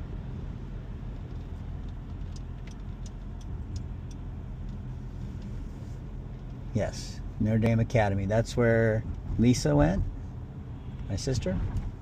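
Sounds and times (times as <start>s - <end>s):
road and engine rumble: 0.0s - 12.0s
light evenly spaced ticks: 1.2s - 5.6s.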